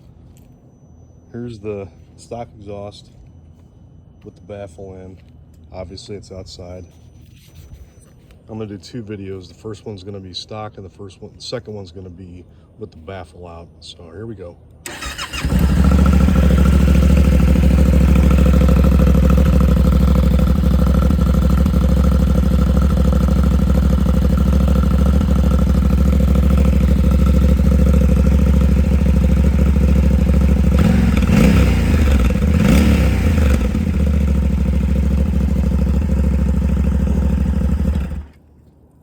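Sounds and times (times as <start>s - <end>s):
motorcycle engine idling and revving: 14.9s - 38.4s.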